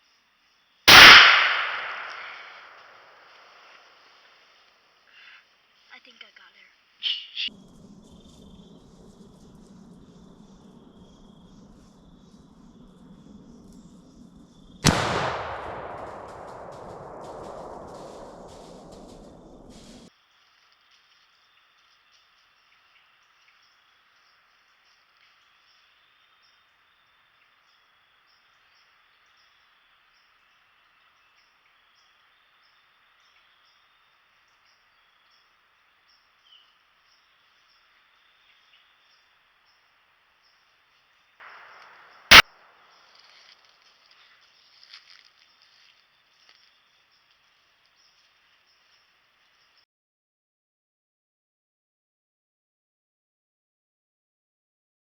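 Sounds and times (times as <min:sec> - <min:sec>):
insect chirping: 0:00.0 - 0:00.9, 0:01.7 - 0:49.8
rifle shot echoing: 0:00.9 - 0:03.1, 0:11.6 - 0:20.1, 0:41.4 - 0:42.4
insect buzzing: 0:07.5 - 0:14.9
steady high hiss: 0:40.9 - 0:46.6.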